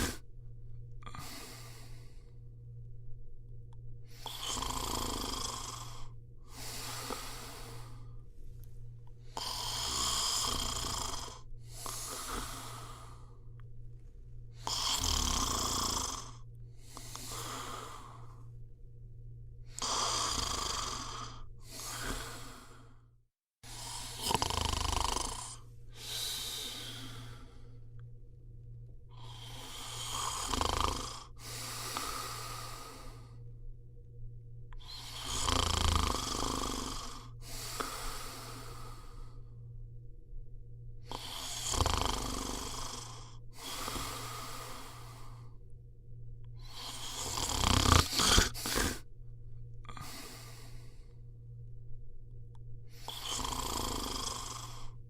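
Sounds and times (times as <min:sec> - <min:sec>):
person snoring: 0:00.0 - 0:00.2, 0:01.0 - 0:02.4, 0:04.1 - 0:08.2, 0:09.2 - 0:13.6, 0:14.5 - 0:18.5, 0:19.6 - 0:28.0, 0:29.1 - 0:33.4, 0:34.8 - 0:39.6, 0:41.0 - 0:45.6, 0:46.5 - 0:49.1, 0:49.8 - 0:51.2, 0:52.9 - 0:55.0
steady low hum: 0:00.0 - 0:55.0.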